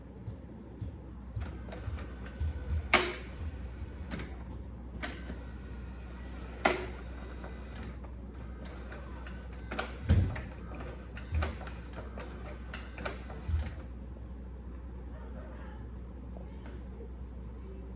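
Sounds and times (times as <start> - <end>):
steady low hum: 0.0 - 17.9.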